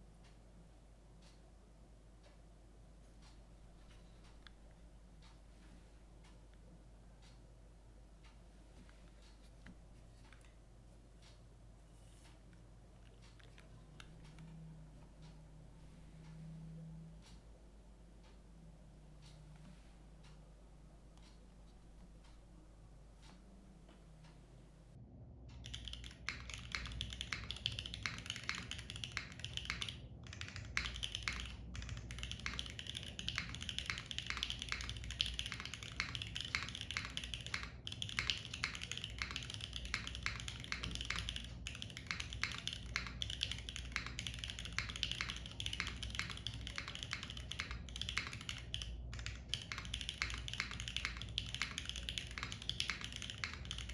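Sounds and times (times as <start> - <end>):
mechanical keyboard typing: 25.6 - 53.9.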